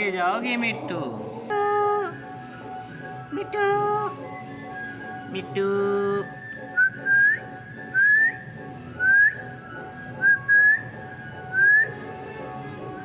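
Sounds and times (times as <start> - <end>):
parakeet whistling rising note: 6.6 - 12.0.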